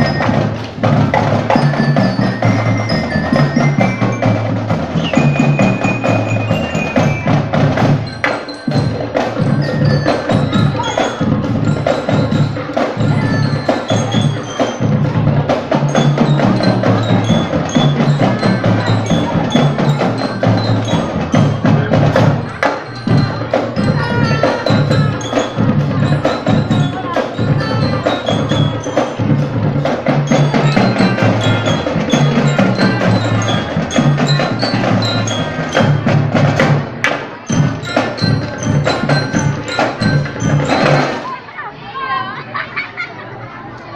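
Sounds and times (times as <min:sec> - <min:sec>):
bell-like mallet melody: 0:00.0 - 0:41.4
rhythmic marching drums: 0:00.0 - 0:43.0.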